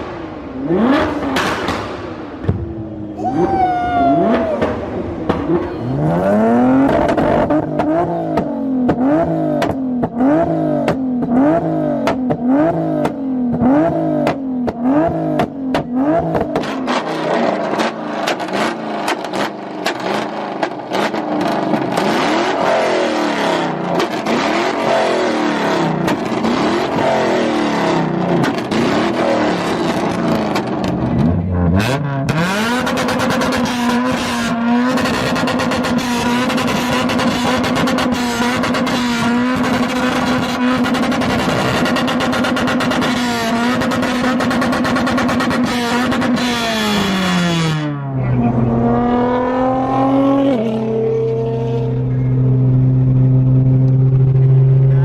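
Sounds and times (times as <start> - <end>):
supercar engine revving: 0.0 - 55.0
exhaust pops and crackles: 1.0 - 2.6, 6.8 - 10.2, 12.0 - 22.2, 26.0 - 27.1, 28.2 - 31.4, 32.2 - 46.9.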